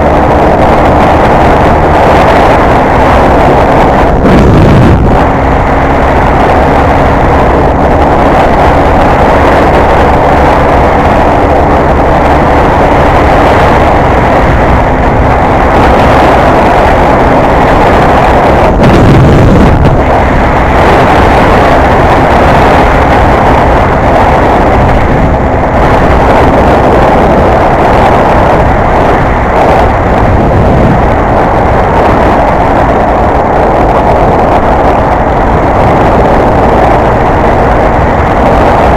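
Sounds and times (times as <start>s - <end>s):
motorcycle engine running: 0.0s - 38.9s
wind noise on microphone: 0.0s - 38.9s.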